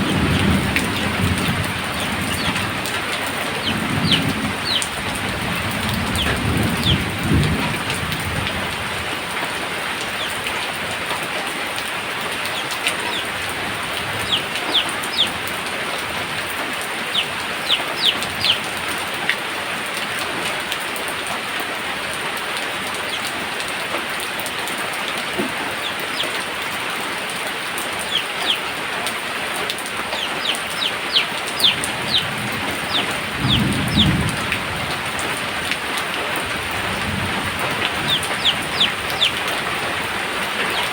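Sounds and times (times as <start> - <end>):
thunder rumbling: 0.0 - 20.0, 27.9 - 40.9
heavy rain falling: 0.0 - 40.9
high chirps: 2.0 - 5.0, 12.5 - 13.3, 14.1 - 15.4, 17.0 - 18.7, 28.0 - 28.6, 30.1 - 34.1, 37.9 - 39.6.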